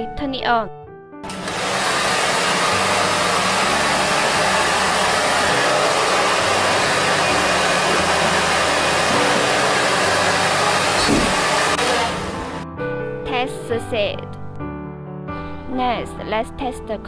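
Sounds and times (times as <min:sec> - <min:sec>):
electric appliance rushing noise: 0:01.2 - 0:12.6.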